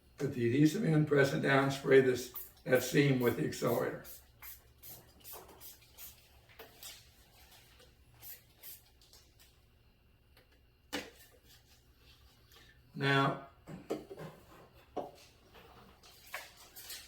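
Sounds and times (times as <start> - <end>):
spray bottle squirts: 2.3 - 2.6, 3.7 - 9.4.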